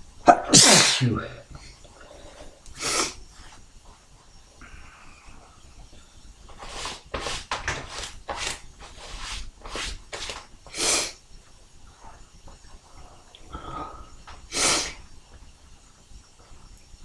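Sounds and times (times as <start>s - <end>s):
person snorting and sneezing: 0.3s - 1.3s.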